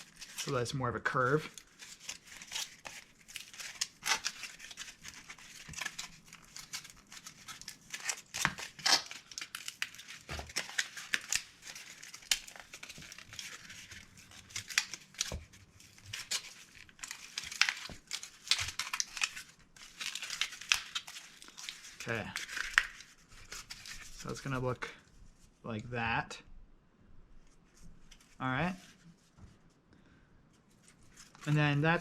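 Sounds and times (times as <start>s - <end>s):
cardboard crackling and crinkling: 0.0s - 25.5s.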